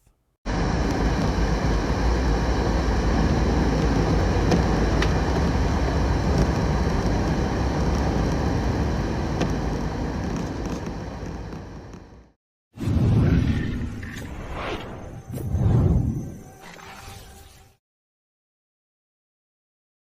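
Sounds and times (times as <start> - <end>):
steady low rumbling: 0.5 - 13.9.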